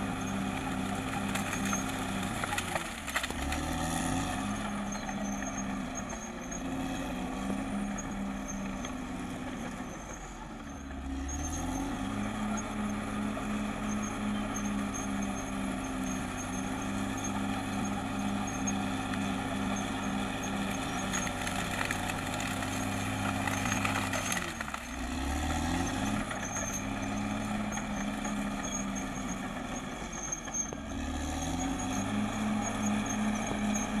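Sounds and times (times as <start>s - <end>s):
bulldozer diesel engine: 0.0s - 34.0s.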